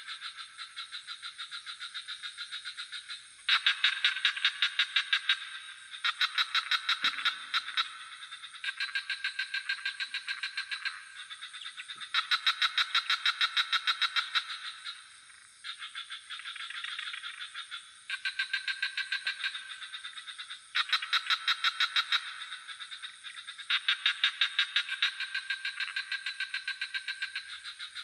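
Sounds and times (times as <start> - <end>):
frogs calling in pulsed trills: 0.0 - 28.0
high-pitched insect drone: 0.0 - 28.0.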